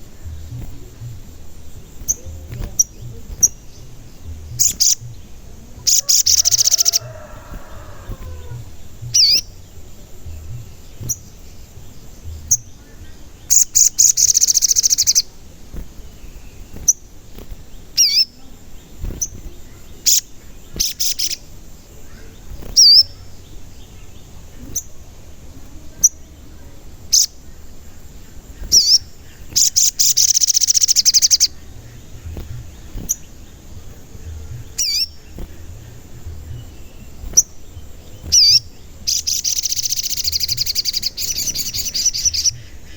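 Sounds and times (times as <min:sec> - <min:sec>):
bird chattering: 0:00.0 - 0:09.7, 0:12.2 - 0:15.4, 0:17.9 - 0:25.0, 0:27.0 - 0:42.9
bird whistling: 0:05.9 - 0:09.5, 0:13.5 - 0:15.3, 0:28.6 - 0:33.2, 0:38.2 - 0:42.8.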